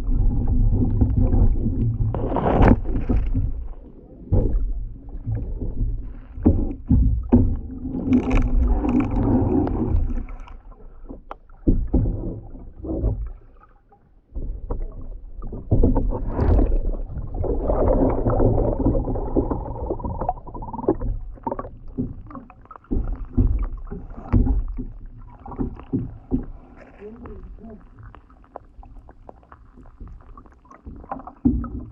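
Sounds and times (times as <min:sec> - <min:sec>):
deep rumbling handling noise: 0:00.0 - 0:13.5, 0:14.2 - 0:31.9
water splashing and sloshing: 0:00.0 - 0:31.9
knocks against kayak hull: 0:01.0 - 0:09.1, 0:20.9 - 0:26.6.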